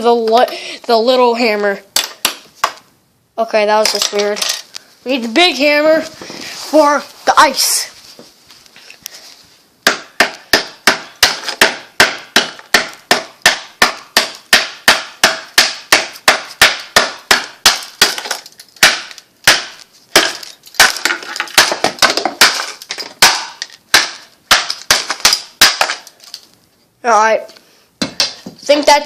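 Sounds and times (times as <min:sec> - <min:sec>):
hammer pounding on ice: 0:09.9 - 0:26.1.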